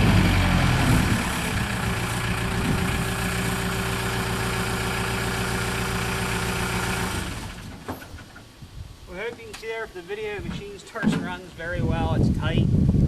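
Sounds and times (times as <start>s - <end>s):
loader engine idling: 0.0s - 8.4s.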